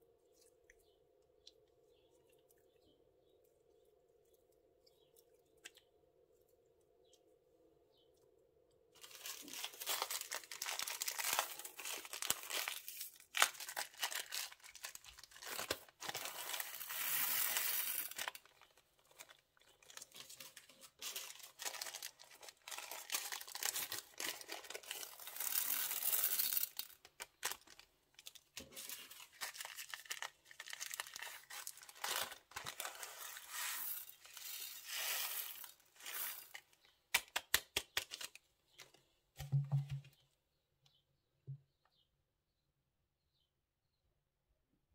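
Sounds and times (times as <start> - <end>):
plastic bags crinkling and tearing: 9.0 - 36.8.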